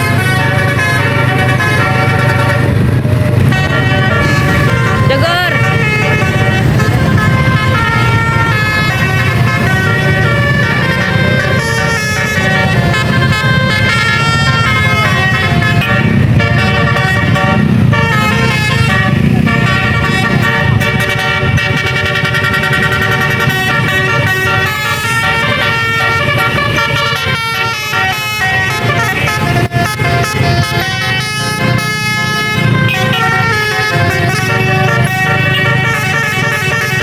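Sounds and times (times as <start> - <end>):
musical air horns playing melody: 0.0 - 37.0
road noise: 0.0 - 37.0
vehicle engine rumble: 0.0 - 37.0.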